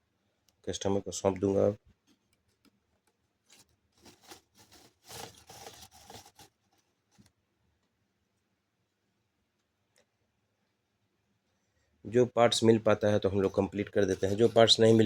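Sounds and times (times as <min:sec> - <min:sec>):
faint scraping and rubbing: 0:01.6 - 0:07.4, 0:13.0 - 0:15.0.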